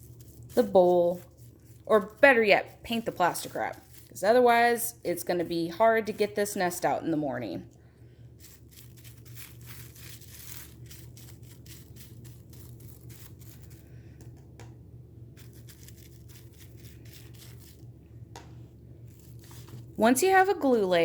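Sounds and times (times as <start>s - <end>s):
paintbrush scratchy strokes: 0.0s - 4.2s, 15.4s - 17.9s, 19.0s - 20.0s
plastic wrap crinkling: 0.0s - 4.3s, 8.4s - 14.0s, 15.4s - 17.9s, 19.0s - 20.0s
steady low hum: 0.0s - 21.0s.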